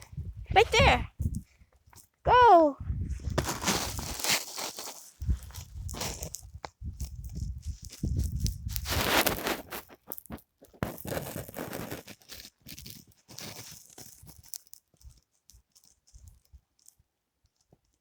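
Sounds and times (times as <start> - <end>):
footsteps crunching in snow: 3.1 - 14.0.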